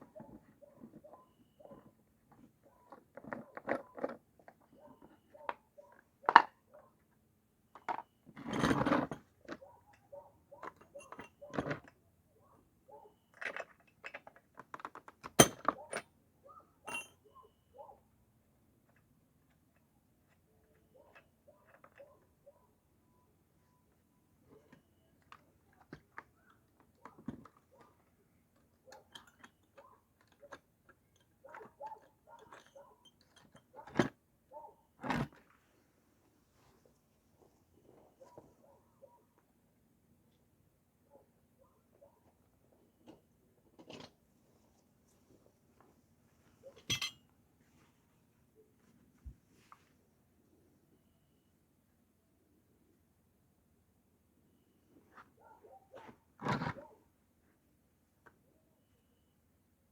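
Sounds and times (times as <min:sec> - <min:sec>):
small tools clicking and knocking: 0:07.8 - 0:12.0, 0:13.3 - 0:16.1, 0:24.7 - 0:34.1, 0:46.7 - 0:47.2.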